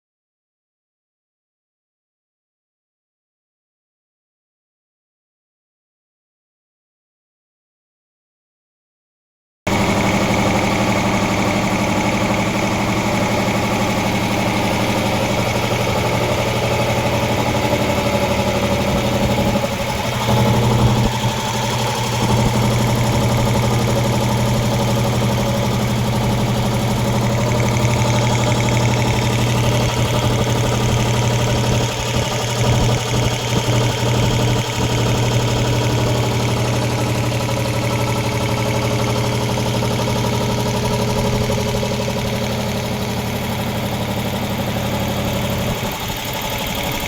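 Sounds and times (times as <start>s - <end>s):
air compressor humming: 9.7s - 47.0s.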